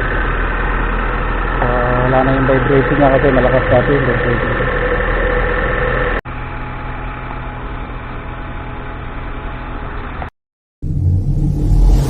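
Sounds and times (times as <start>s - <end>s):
car engine idling: 0.0s - 10.1s
deep rumble with whoosh: 10.8s - 12.0s.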